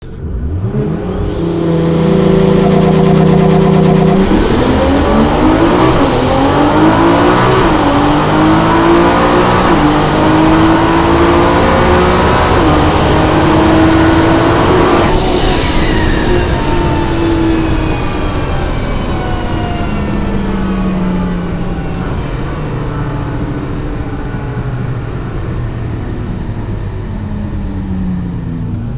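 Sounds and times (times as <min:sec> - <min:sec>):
car engine accelerating: 0:00.0 - 0:28.9
turbo whine: 0:00.0 - 0:28.9.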